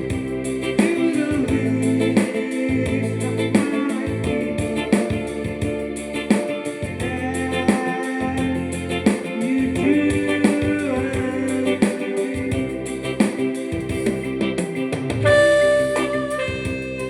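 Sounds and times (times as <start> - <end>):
electronic keyboard organ melody: 0.0 - 17.0
steady beat: 0.0 - 17.0.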